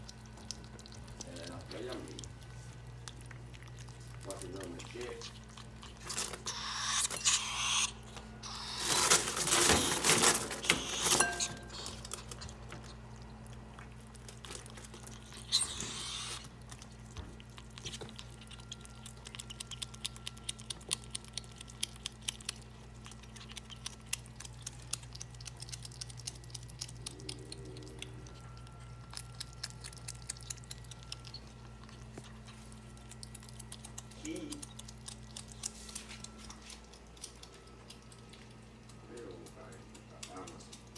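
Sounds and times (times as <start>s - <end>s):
clicking chewing and tearing: 0.0s - 40.9s
ferrets hissing: 6.5s - 9.0s, 15.5s - 16.4s.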